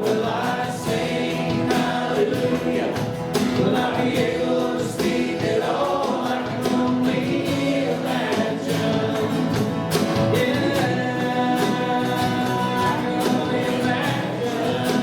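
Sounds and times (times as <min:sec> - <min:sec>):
people singing: 0:00.0 - 0:15.0
worship band playing gospel music: 0:00.0 - 0:15.0.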